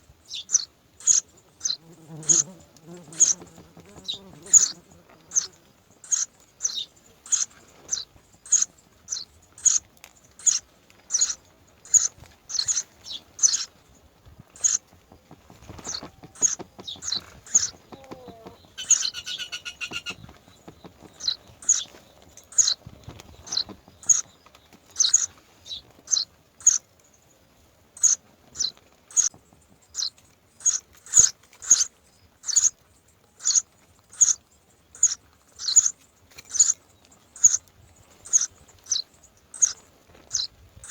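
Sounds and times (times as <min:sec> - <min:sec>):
myna birds chirping: 0:00.2 - 0:40.9
harsh bird call: 0:15.8 - 0:20.3.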